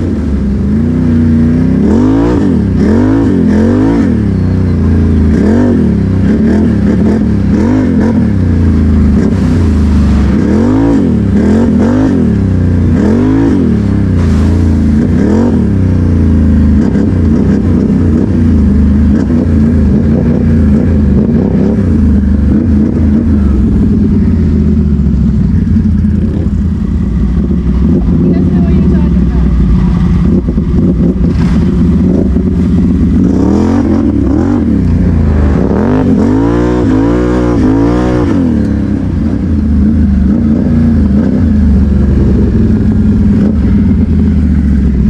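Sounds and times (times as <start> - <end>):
quad bike engine revving: 0.0 - 45.0.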